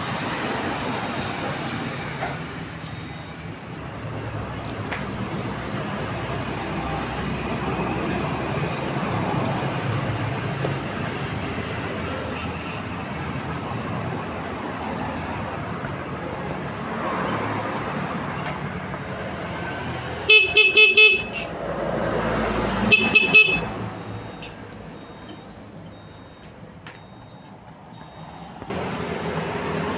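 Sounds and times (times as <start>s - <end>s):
scooter horn short beeps: 22.9s - 23.7s.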